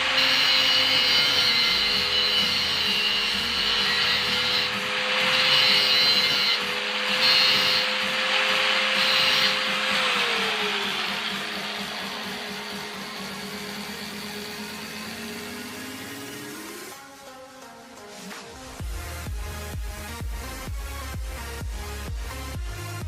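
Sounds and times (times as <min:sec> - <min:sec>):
angle grinder cutting metal: 0:00.0 - 0:16.9.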